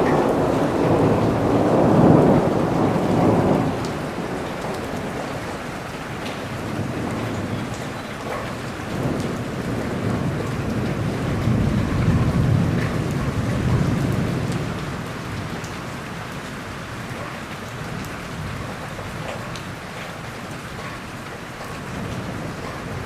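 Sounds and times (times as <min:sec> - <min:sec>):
low roll of thunder: 0:00.0 - 0:17.2
heavy rain falling: 0:00.0 - 0:23.0.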